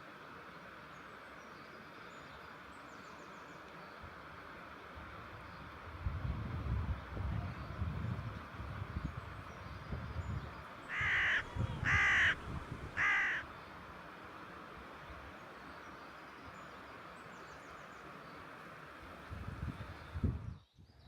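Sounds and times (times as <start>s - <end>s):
steady outdoor hiss: 0.0s - 21.0s
bird calling: 10.9s - 13.4s.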